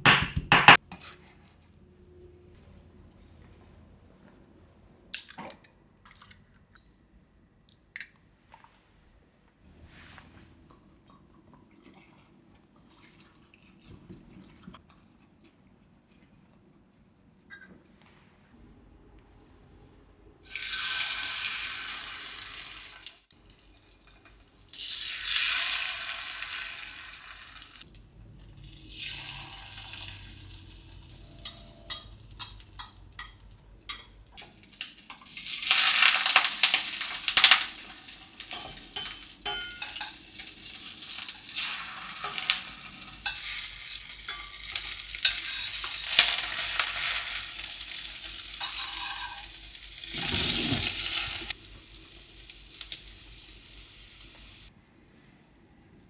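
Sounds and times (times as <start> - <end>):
pancake sizzling in oil: 20.5 - 27.9, 34.4 - 54.7.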